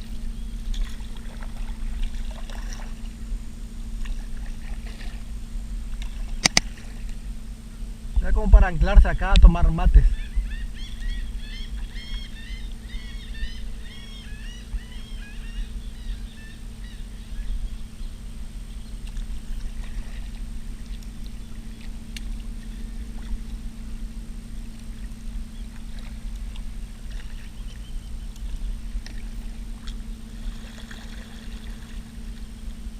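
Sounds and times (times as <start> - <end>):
steady low hum: 0.0 - 32.9
birds chirping: 5.9 - 23.2, 25.2 - 29.4.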